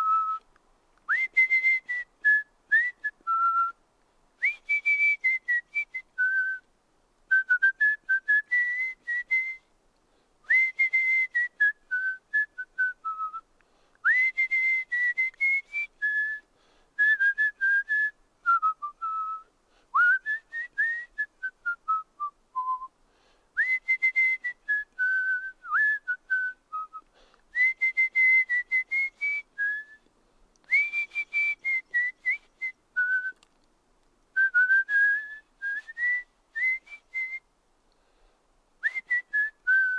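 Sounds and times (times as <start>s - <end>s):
person whistling: 0.0s - 0.4s, 1.1s - 3.8s, 4.4s - 6.7s, 7.3s - 9.7s, 10.5s - 13.4s, 14.0s - 22.9s, 23.6s - 33.5s, 34.4s - 37.4s, 38.8s - 39.9s
breath hiss: 13.6s - 14.1s, 16.4s - 17.0s, 19.5s - 20.0s, 23.0s - 23.6s, 27.0s - 27.6s, 37.9s - 38.6s.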